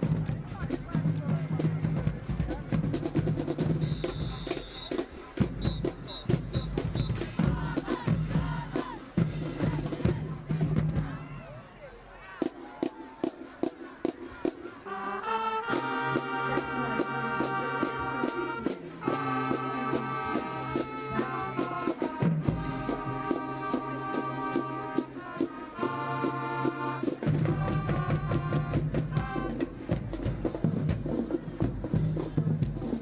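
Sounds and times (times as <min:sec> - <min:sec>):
steady drum beat: 0:00.0 - 0:11.3, 0:15.8 - 0:33.0
brass chords: 0:13.7 - 0:30.4.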